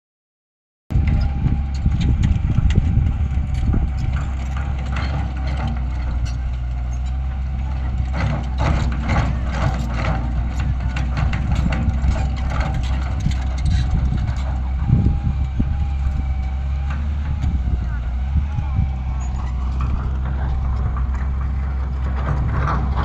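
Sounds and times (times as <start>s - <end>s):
heavy machine engine humming: 0.9s - 23.0s
metallic knocks and clanks: 1.0s - 14.6s, 19.1s - 23.0s.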